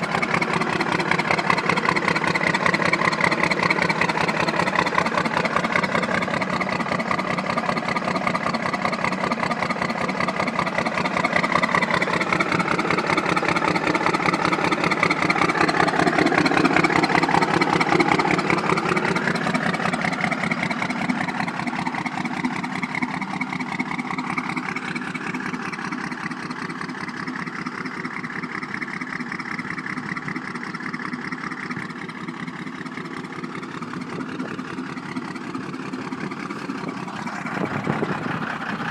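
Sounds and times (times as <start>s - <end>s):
misfiring diesel engine running: 0.0s - 38.9s.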